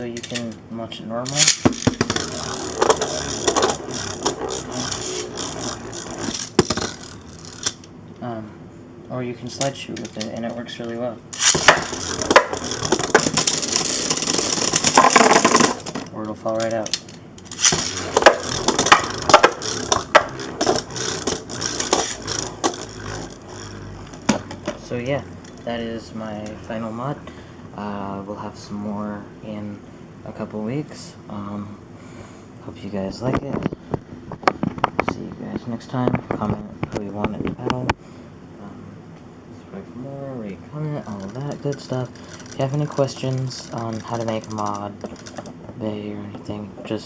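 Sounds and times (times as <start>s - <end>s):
spinning top rattling scrape: 0.0s - 0.6s, 1.2s - 8.0s, 9.5s - 27.2s, 40.8s - 46.2s
spinning top knocking plastic: 1.3s - 7.8s, 11.4s - 25.8s, 41.0s - 45.8s
plastic clacks: 1.3s - 7.9s, 9.6s - 25.7s, 41.0s - 46.5s.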